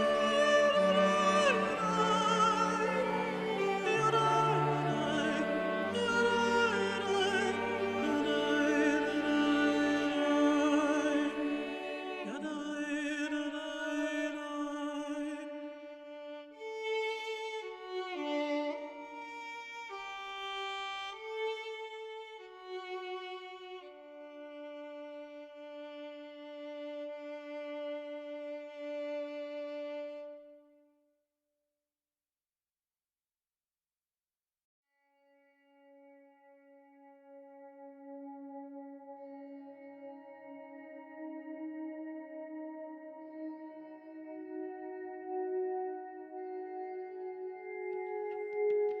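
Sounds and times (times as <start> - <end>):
bowed strings playing slow notes: 0.0 - 13.5, 35.2 - 49.0.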